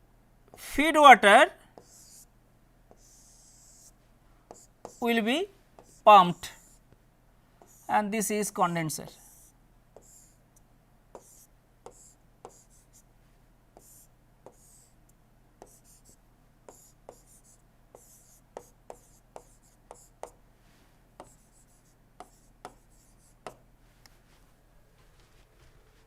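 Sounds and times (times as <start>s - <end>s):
pen scratching on paper: 1.8s - 2.3s, 2.9s - 3.9s, 4.5s - 5.1s, 5.8s - 6.8s, 7.6s - 7.9s, 9.1s - 10.4s, 11.2s - 13.0s, 13.8s - 14.9s, 15.6s - 20.4s, 21.2s - 23.6s.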